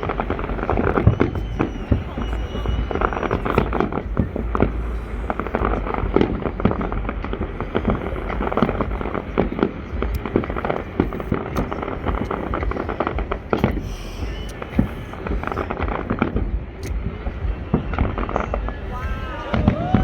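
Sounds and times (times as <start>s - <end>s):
fireworks cracking and banging: 0.0s - 20.0s
low rumble: 0.0s - 20.0s.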